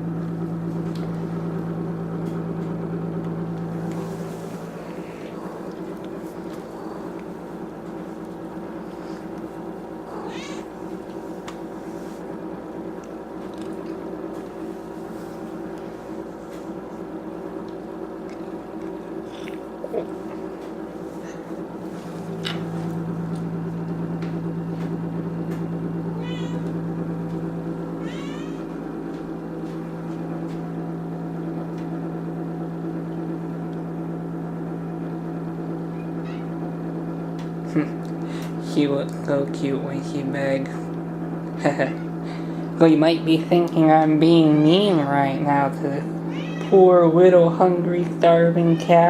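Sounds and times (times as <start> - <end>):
steady low hum: 0.0 - 49.0
cat meowing: 10.1 - 10.7, 26.1 - 26.7, 28.0 - 28.7, 36.2 - 36.5, 46.3 - 46.8, 48.5 - 49.0.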